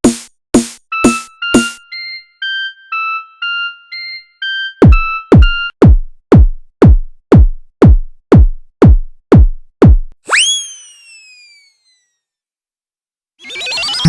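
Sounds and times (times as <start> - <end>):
whistle-like synth tone swooping: 10.3 - 12.1.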